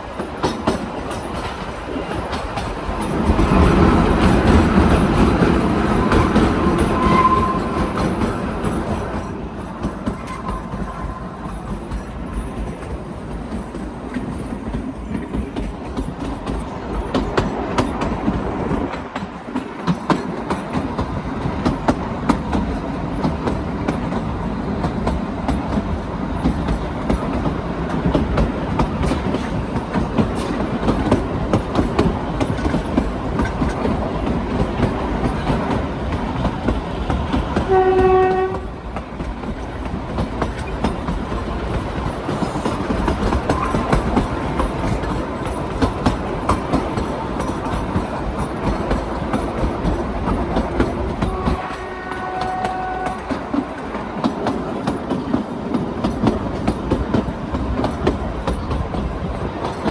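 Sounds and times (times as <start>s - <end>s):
train wheels clicking on rails: 0.0s - 59.9s
train horn blast: 6.8s - 8.0s, 37.6s - 38.8s, 51.2s - 53.5s.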